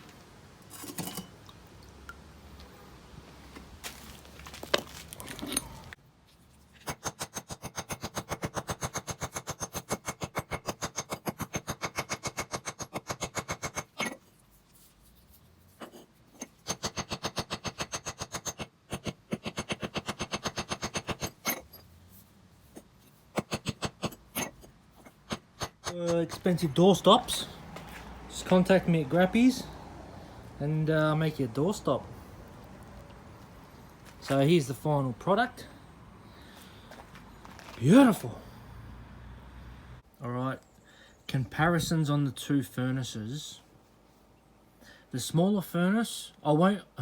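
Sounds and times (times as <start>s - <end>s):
hand tool striking metal: 16.4s - 21.8s.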